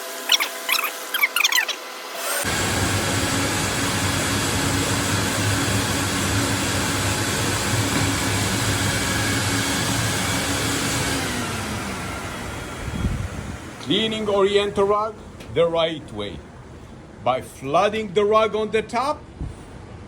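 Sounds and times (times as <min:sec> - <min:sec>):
industrial vacuum humming: 0:00.0 - 0:16.9.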